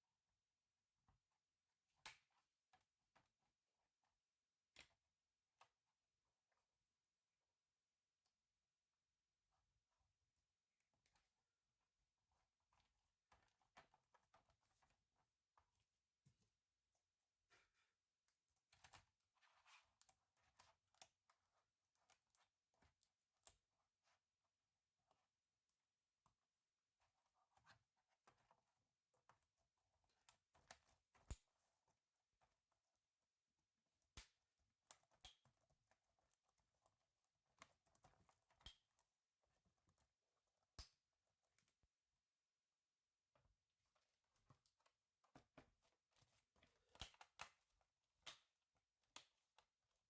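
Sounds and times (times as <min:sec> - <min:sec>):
clicks of small parts and tools: 0:37.6 - 0:38.9.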